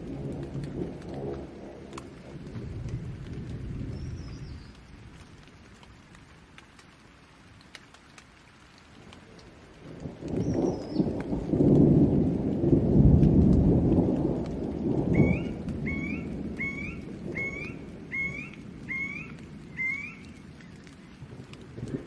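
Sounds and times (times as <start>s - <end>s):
thunder rumbling: 0.0s - 5.4s, 9.8s - 22.0s
steady rain: 0.0s - 22.0s
bird calling short rising notes: 15.2s - 20.4s.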